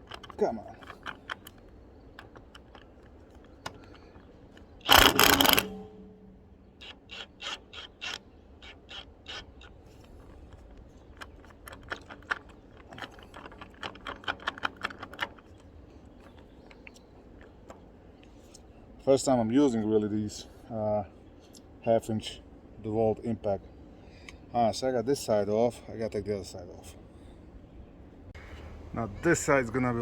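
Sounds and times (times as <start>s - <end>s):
socket ratchet clicking: 0.0s - 6.1s
loud rattle: 4.8s - 6.2s.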